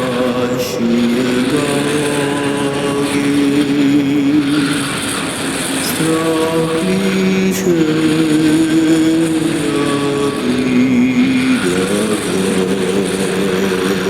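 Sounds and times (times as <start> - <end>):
harsh droning instrumental music: 0.0 - 14.0.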